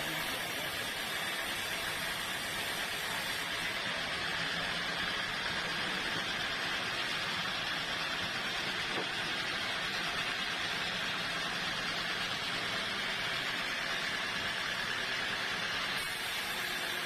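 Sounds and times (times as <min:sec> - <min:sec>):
saw hissing: 0:00.0 - 0:07.6, 0:12.5 - 0:17.0.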